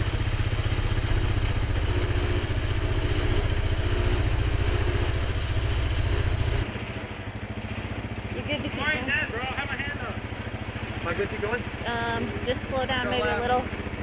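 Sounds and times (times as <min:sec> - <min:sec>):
thin high whine: 0:00.0 - 0:06.6
atv engine running: 0:00.0 - 0:14.0.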